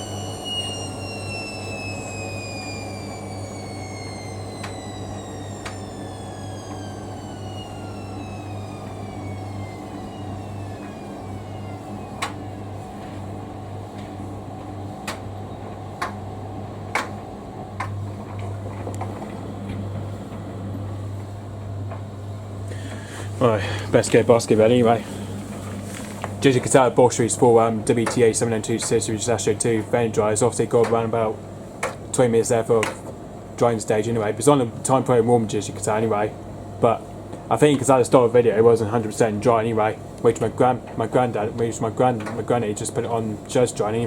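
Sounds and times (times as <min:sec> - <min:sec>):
low hum: 0:00.0 - 0:29.9
washing machine motor whining: 0:00.0 - 0:44.0
washing machine drum clicks and knocks: 0:13.9 - 0:20.4, 0:26.5 - 0:33.2, 0:40.4 - 0:42.6.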